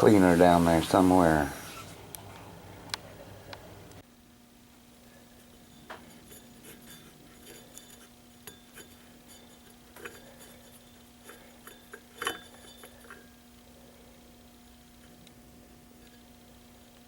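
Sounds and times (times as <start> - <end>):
faint steady hum: 0.0 - 17.0
small metal parts clinking: 5.4 - 13.4.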